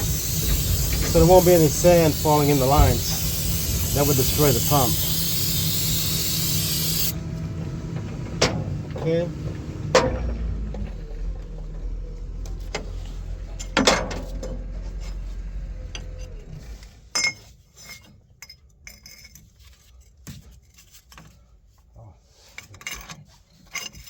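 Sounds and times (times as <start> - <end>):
low steady hum: 0.0 - 16.8
metal tools clanking on steel: 17.1 - 19.6.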